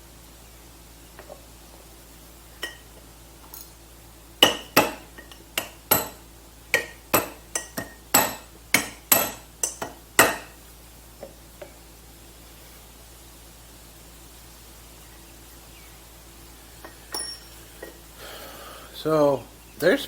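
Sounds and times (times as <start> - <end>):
hammer striking metal: 4.4 - 6.2, 6.8 - 10.5.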